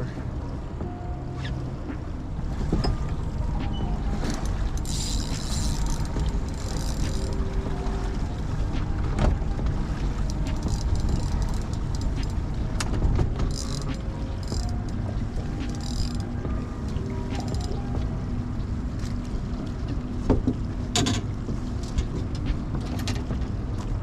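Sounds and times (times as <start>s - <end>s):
low rumble of wind and water: 0.0s - 24.0s.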